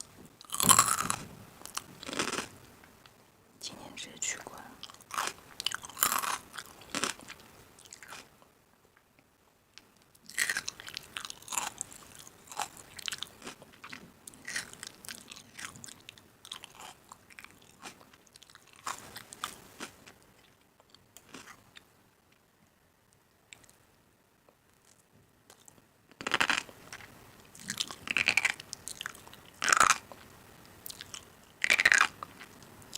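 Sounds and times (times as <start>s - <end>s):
crunchy snack being chewed: 0.0s - 2.6s, 4.8s - 8.4s, 10.2s - 21.9s, 24.8s - 32.7s.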